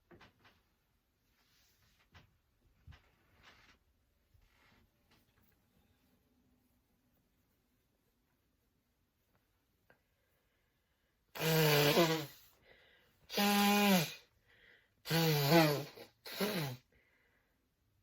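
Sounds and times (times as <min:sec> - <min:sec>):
short breaths: 0:11.4 - 0:17.6.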